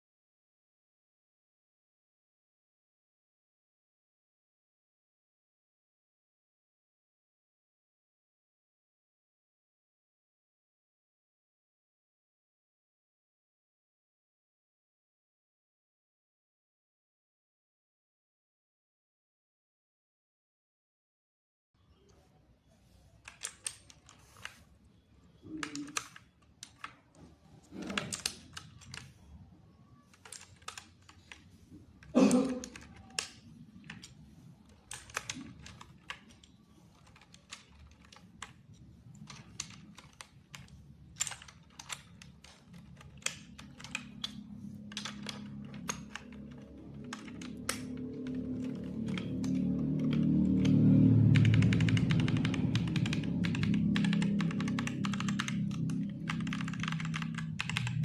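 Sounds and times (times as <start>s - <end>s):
mechanical keyboard clicks: 23.2s - 24.7s, 25.4s - 29.3s, 30.0s - 58.0s.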